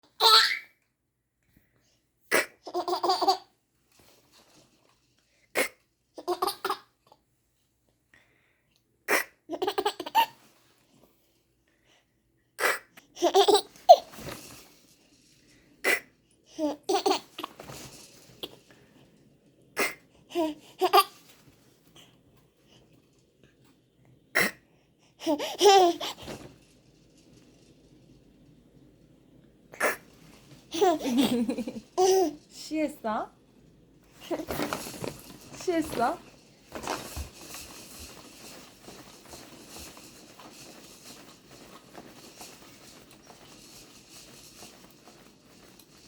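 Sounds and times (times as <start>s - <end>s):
baby giggling: 0.1s - 0.7s, 2.3s - 3.5s, 5.6s - 7.0s, 9.1s - 10.4s, 12.6s - 14.0s, 16.6s - 17.5s, 19.8s - 21.2s, 25.2s - 26.2s, 30.7s - 32.4s.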